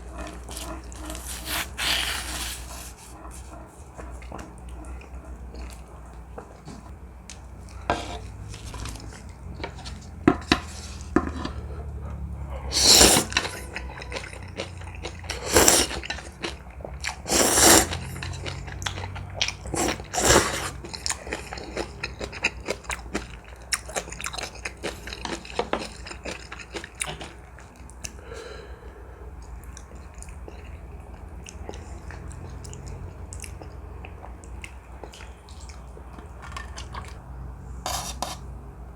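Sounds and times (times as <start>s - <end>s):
wet chewing with crunches: 0.0s - 10.2s, 10.8s - 28.2s, 29.4s - 37.2s
loud slurps: 0.4s - 3.2s, 12.6s - 13.6s, 15.3s - 16.1s, 17.2s - 18.2s, 19.7s - 20.8s.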